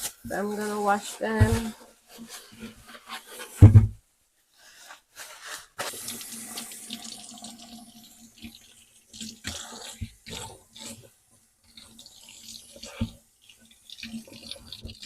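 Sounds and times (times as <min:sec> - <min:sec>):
tap water running into sink: 0:00.3 - 0:01.8, 0:05.8 - 0:15.0
heavy thump: 0:03.6 - 0:04.0.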